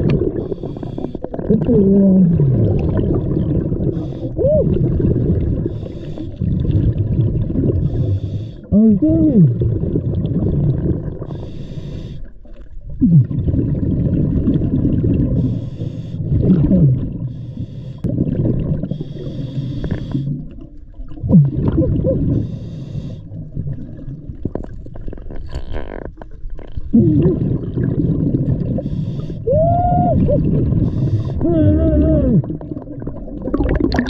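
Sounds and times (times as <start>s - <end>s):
exhaled bubbles bubbling: 0.0s - 34.0s
regulator inhale hiss: 5.7s - 6.4s, 7.9s - 8.7s, 11.4s - 12.3s, 15.4s - 16.2s, 17.3s - 18.1s, 18.9s - 20.3s, 22.4s - 23.3s, 28.8s - 29.4s.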